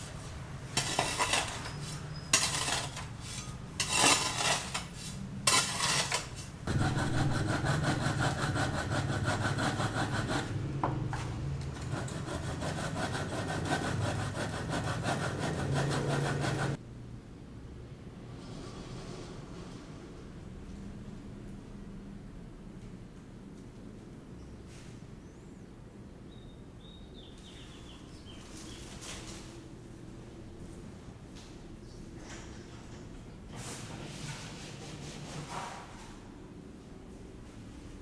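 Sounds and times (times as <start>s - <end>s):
tool rasping building material: 0.0s - 16.8s.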